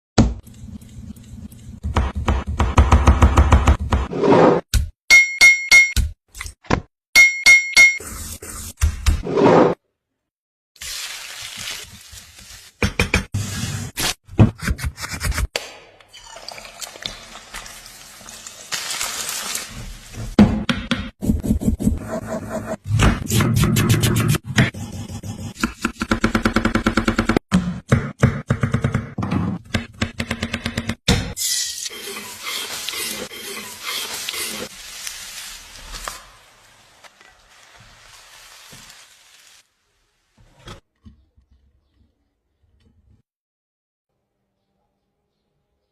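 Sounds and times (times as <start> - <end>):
food sizzling in a pan: 10.8 - 12.8, 16.6 - 20.2, 31.4 - 40.2
water running in kitchen: 10.8 - 14.0, 16.1 - 20.4, 31.2 - 40.4.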